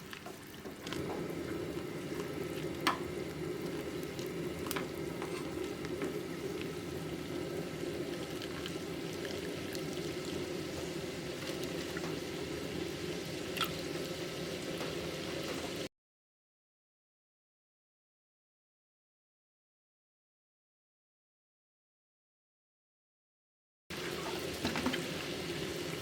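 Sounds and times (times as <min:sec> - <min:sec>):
water boiling in a pot: 0:00.0 - 0:15.9, 0:23.9 - 0:26.0
utensil clicking against pot: 0:02.8 - 0:03.1.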